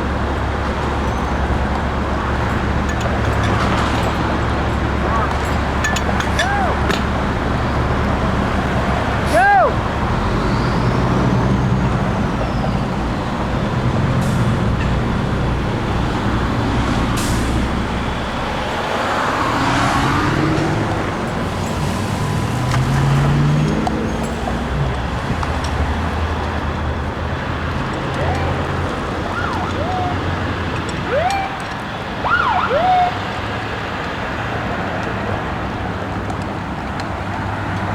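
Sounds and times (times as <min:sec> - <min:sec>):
fire engine rumbling: 0:00.0 - 0:37.9
road noise: 0:00.0 - 0:37.9
siren whoops: 0:09.2 - 0:09.8, 0:28.0 - 0:33.4.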